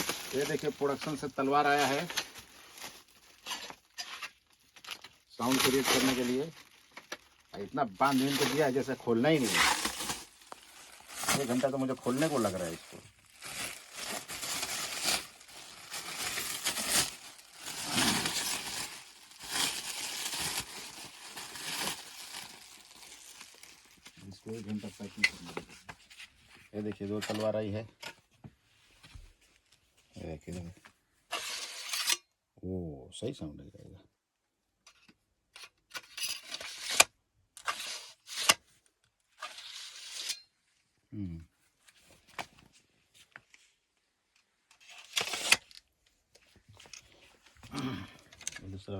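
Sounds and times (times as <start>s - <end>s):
packaging crinkling and tearing: 0.0s - 25.2s
sword scraping against scabbard: 31.3s - 32.2s, 36.3s - 38.6s, 39.4s - 40.5s.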